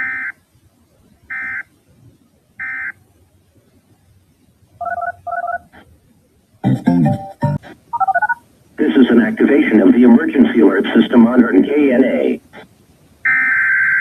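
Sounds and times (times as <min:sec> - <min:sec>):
touch-tone beeps: 0:07.0 - 0:08.4.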